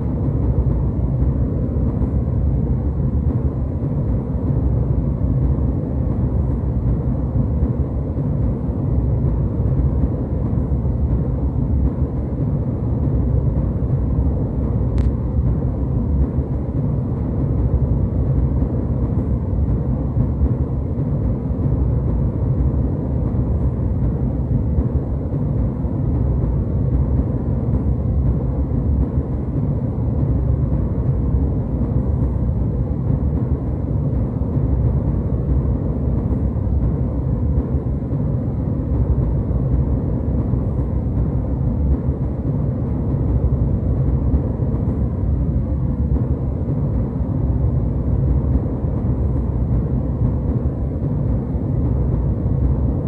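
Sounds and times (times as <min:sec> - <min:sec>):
airliner cabin rumble: 0:00.0 - 0:53.0
faint click: 0:15.0 - 0:15.2.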